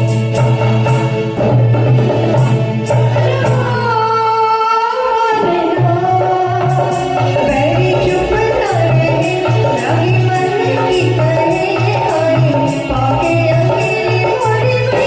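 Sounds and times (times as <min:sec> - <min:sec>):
hand drum beat: 0:06.1 - 0:15.0
wavering melody line: 0:06.8 - 0:15.0.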